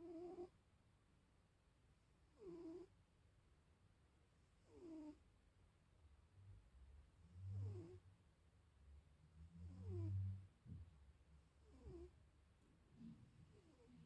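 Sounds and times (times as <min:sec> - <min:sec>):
cat snoring: 0:00.0 - 0:00.5, 0:02.3 - 0:02.9, 0:04.6 - 0:05.2, 0:07.2 - 0:08.0, 0:09.5 - 0:10.4, 0:11.6 - 0:12.1, 0:13.5 - 0:14.0.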